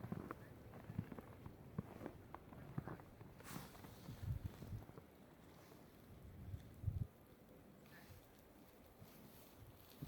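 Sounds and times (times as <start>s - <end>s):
footsteps crunching in snow: 0.0s - 5.9s, 8.6s - 10.0s.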